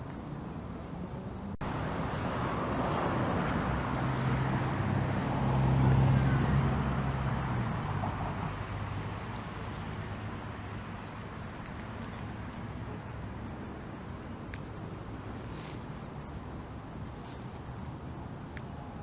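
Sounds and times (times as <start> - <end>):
vehicle passing by: 1.6 - 10.0.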